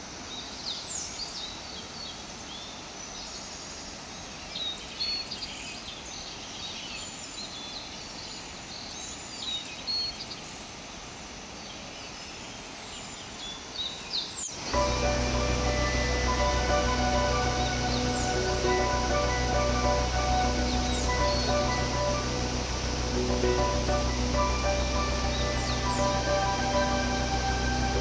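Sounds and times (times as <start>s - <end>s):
birds chirping: 14.5s - 28.0s
steady rushing hiss: 14.5s - 28.0s.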